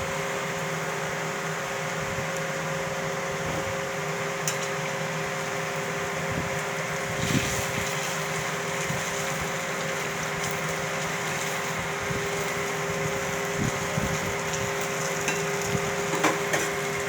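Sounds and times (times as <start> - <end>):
machine hum with steady tones: 0.0 - 17.0.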